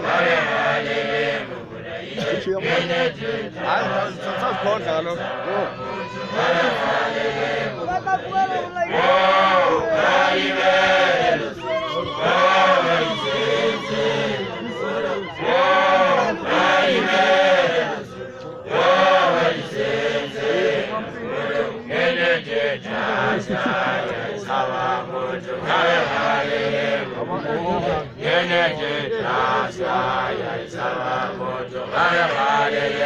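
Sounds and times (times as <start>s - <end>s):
group of voices chanting: 0.0s - 33.0s.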